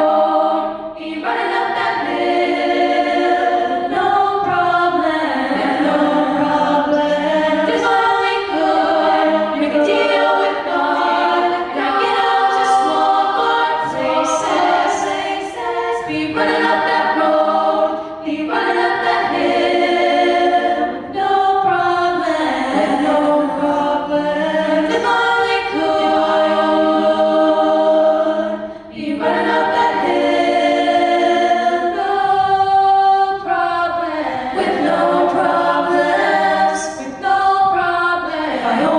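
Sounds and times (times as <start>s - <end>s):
vocal ensemble singing a cappella: 0.0s - 38.9s.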